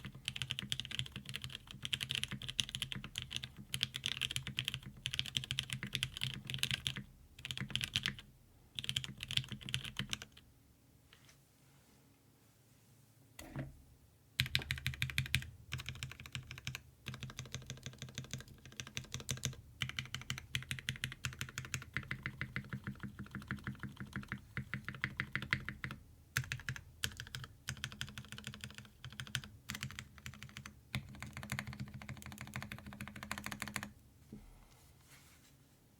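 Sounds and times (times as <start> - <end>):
fast typing on mechanical keyboard: 0.0 - 10.4, 14.4 - 33.9.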